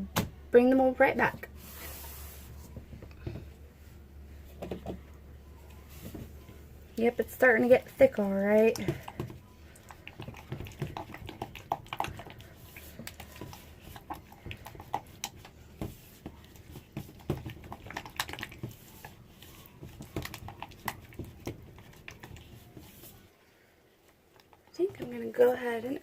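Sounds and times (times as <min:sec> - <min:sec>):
spatula stirring thick batter: 0:05.6 - 0:23.4.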